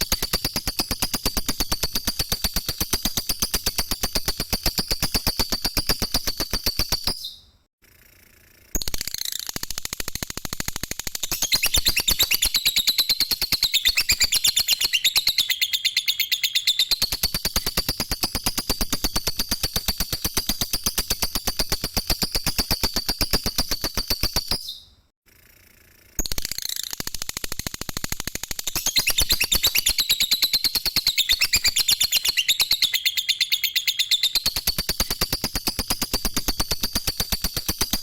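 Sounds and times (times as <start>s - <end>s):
lovebird chattering trill: 11.3s - 18.4s, 28.8s - 37.9s.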